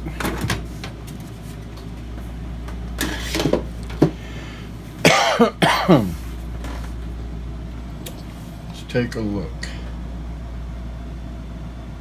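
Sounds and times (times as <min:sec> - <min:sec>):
steady low hum: 0:00.0 - 0:12.0
person coughing: 0:05.0 - 0:06.3.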